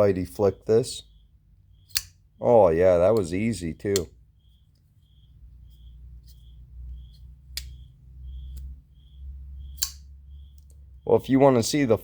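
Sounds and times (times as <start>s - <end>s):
steady low hum: 0.0s - 12.0s
sharp clicks: 1.9s - 2.2s, 3.1s - 4.2s, 7.5s - 7.8s, 9.7s - 10.8s
faint high chirp: 4.3s - 11.3s.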